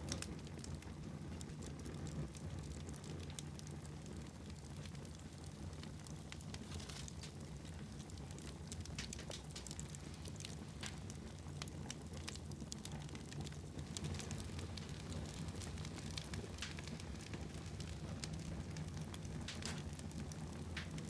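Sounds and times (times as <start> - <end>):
fire flames rumbling: 0.0 - 21.0
fire pops and crackles: 0.0 - 21.0.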